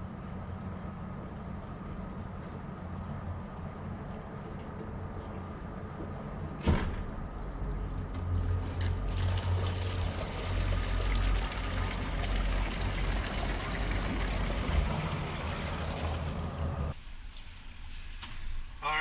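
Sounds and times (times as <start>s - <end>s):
boat engine rumbling: 0.0s - 17.0s
water rushing along hull: 7.8s - 18.2s.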